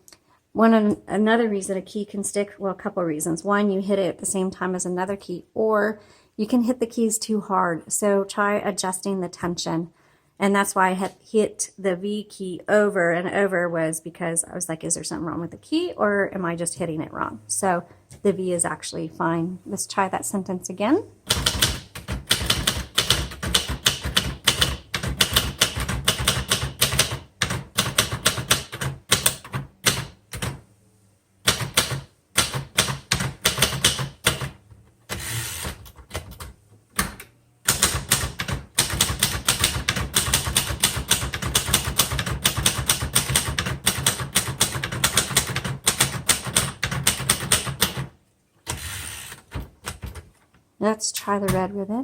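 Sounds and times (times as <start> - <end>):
manual typewriter keys striking: 21.3 - 30.6, 31.5 - 34.6, 35.6 - 48.1.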